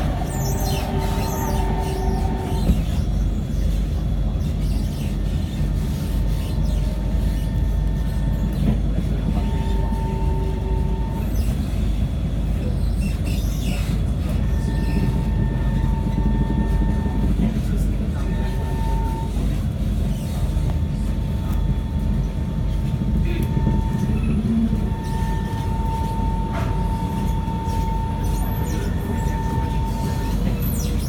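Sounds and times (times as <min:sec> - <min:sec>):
train low rumble: 0:00.0 - 0:31.0
thin whine: 0:21.3 - 0:31.0.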